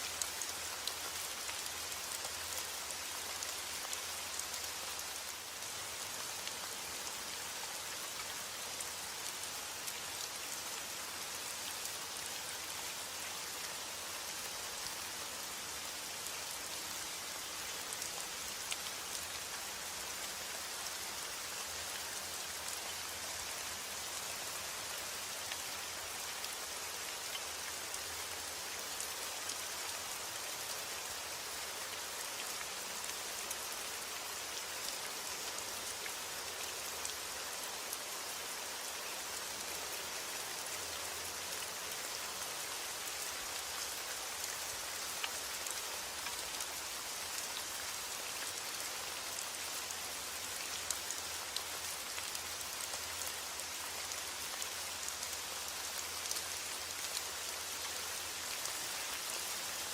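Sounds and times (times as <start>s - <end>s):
raindrops ticking on a surface: 0.0s - 13.4s, 43.0s - 59.9s.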